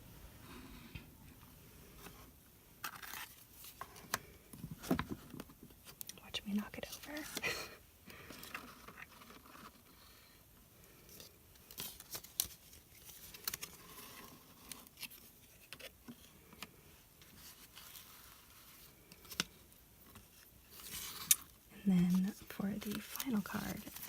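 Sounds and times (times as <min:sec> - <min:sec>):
paper packaging crinkling: 0:02.8 - 0:04.2, 0:11.2 - 0:24.0.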